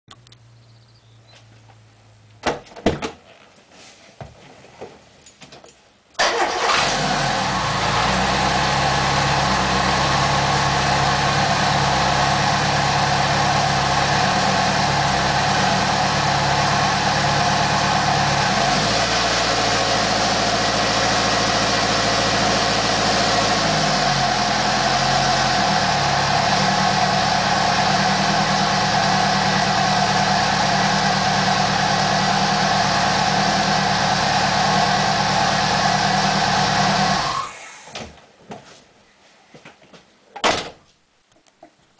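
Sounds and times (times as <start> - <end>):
car engine starting and idling: 6.2 - 38.0.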